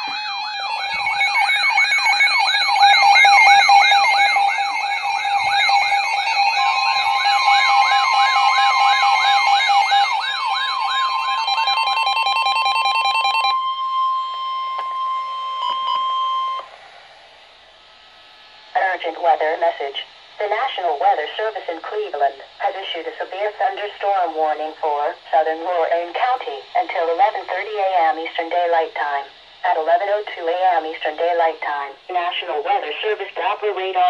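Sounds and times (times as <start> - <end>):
electronic siren alarm sweeping: 0.0 - 21.0
steady warning alarm tone: 0.0 - 34.0.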